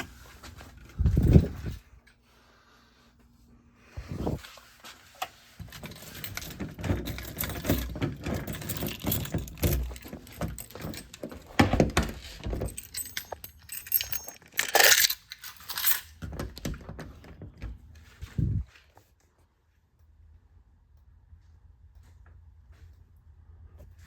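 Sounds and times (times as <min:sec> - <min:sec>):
small hard objects jangling: 0:05.8 - 0:16.1.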